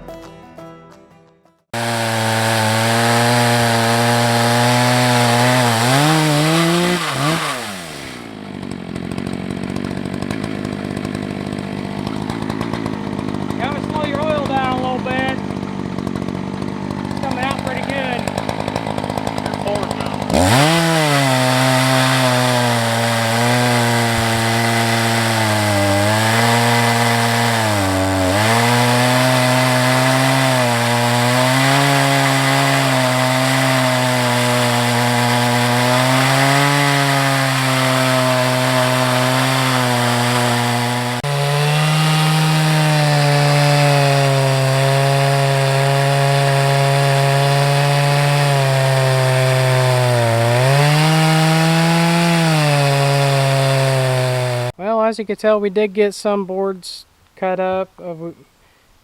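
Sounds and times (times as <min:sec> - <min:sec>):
chainsaw ripping a log: 0:01.7 - 0:54.8.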